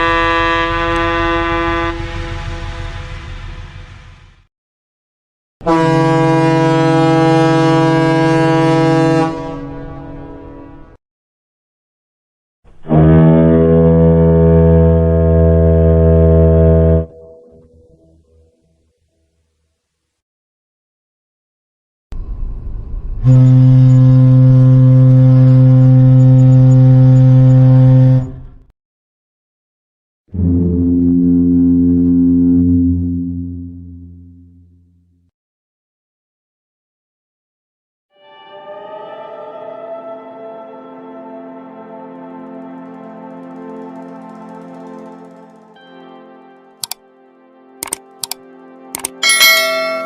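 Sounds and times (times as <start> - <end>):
ship's horn blast: 0.0 - 3.9, 5.6 - 11.0, 12.8 - 18.2, 23.2 - 28.4, 30.3 - 34.7
low rumble: 1.0 - 4.5.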